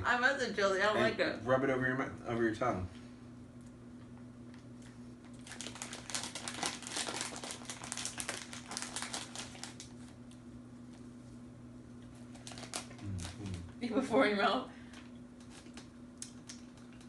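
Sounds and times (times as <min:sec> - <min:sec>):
low electrical hum: 0:00.0 - 0:17.0
plastic wrapper crinkling: 0:05.3 - 0:10.2, 0:12.3 - 0:13.7.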